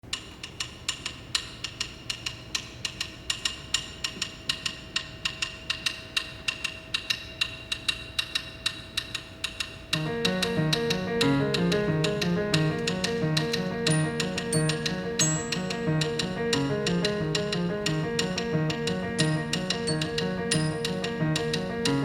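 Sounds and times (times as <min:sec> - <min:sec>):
sharp percussive clicks: 0:00.1 - 0:22.0
plucked-string instrumental music: 0:10.0 - 0:22.0.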